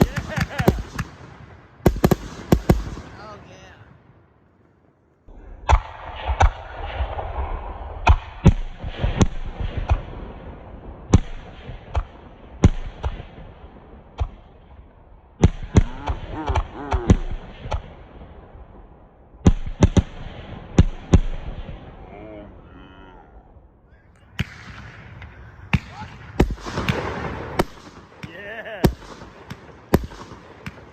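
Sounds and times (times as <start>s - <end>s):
fireworks bangs: 0.0s - 4.2s, 15.4s - 18.9s, 24.2s - 30.9s.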